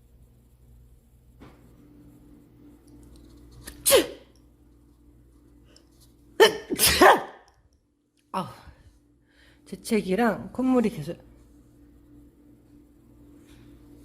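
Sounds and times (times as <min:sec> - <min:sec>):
woman sneezing: 0:03.7 - 0:04.3, 0:06.4 - 0:07.4.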